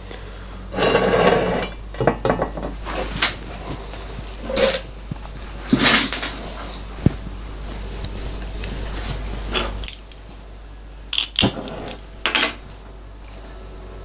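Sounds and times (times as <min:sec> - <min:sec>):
background hiss and hum: 0:00.0 - 0:14.0
metal tools clinking: 0:09.5 - 0:10.2, 0:11.2 - 0:12.6.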